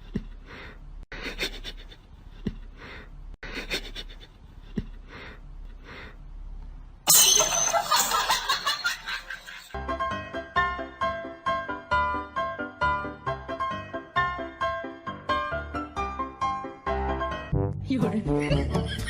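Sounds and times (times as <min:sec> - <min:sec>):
breathy panting: 0:00.0 - 0:06.3.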